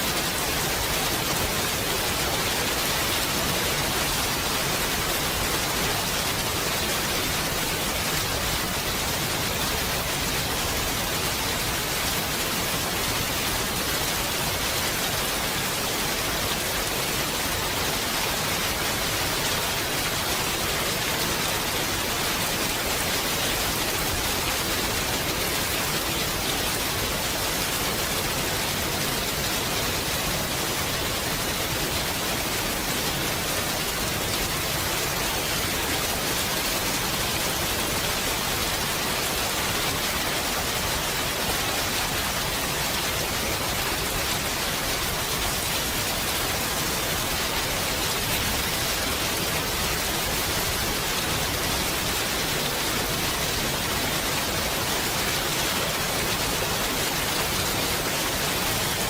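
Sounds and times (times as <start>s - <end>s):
steady rain hiss: 0.0s - 59.0s.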